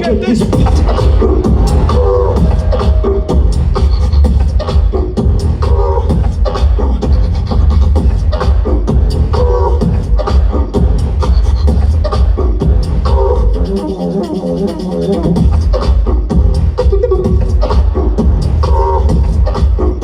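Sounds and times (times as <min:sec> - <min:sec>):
vocal beatboxing: 0:00.0 - 0:20.0
wavering vocal melody: 0:00.2 - 0:10.8.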